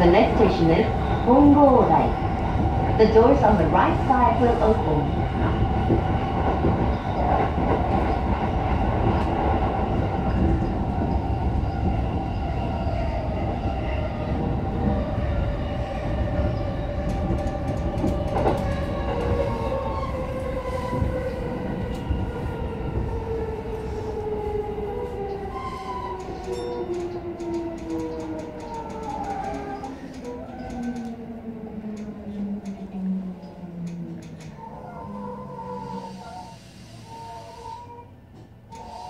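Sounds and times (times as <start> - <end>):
train wheels rumbling on rails: 0.0 - 39.0.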